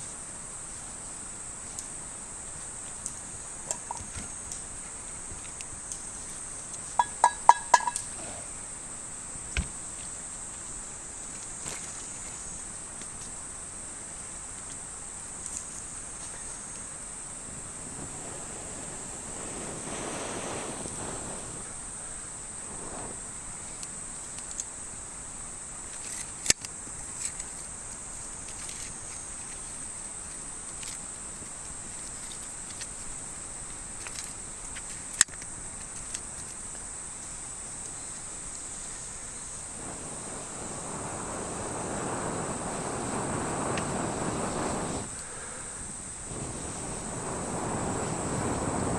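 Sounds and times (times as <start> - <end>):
high-pitched insect chorus: 0.0 - 48.9
soft rushing noise: 17.3 - 22.0, 39.6 - 45.2, 46.1 - 48.9.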